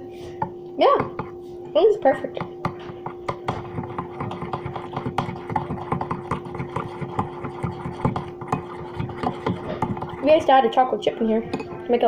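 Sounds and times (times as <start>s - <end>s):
steady hum: 0.0s - 12.0s
spoon clinking in a bowl: 11.5s - 11.9s.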